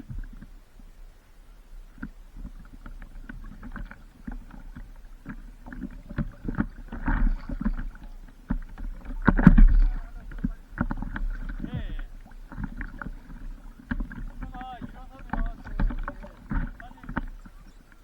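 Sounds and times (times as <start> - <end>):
water sloshing and splashing: 0.0 - 18.0
knocks on paddleboard: 6.0 - 17.6
steady low rumble: 6.3 - 18.0.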